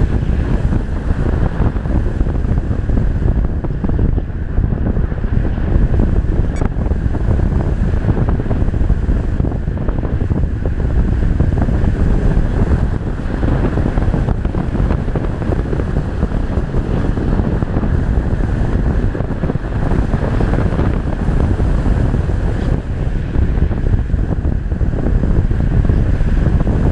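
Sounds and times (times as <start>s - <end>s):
wind buffeting microphone: 0.0s - 26.9s.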